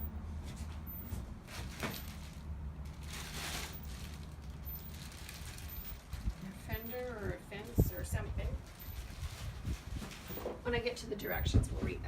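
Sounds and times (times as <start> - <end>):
low steady rumble: 0.0 - 12.0
packaging rustling scrapes: 1.1 - 6.9, 8.6 - 10.6.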